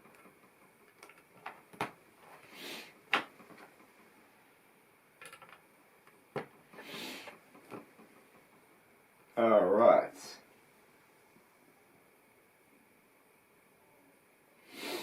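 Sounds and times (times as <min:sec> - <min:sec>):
plastic bricks clicking together: 0:00.9 - 0:01.9, 0:05.2 - 0:05.6.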